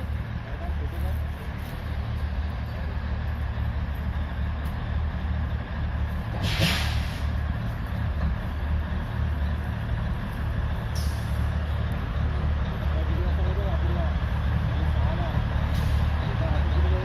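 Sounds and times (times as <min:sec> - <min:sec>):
train rumbling: 0:00.0 - 0:17.0
train hiss: 0:06.4 - 0:07.4.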